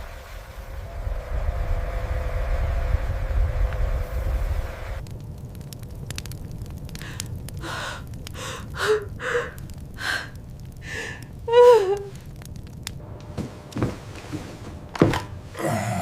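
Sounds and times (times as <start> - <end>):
person gasping for breath: 7.0 - 12.0.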